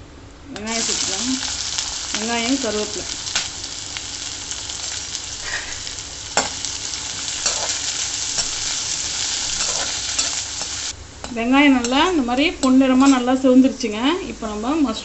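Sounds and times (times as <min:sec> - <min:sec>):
onion sizzling in hot oil: 0:00.6 - 0:11.0.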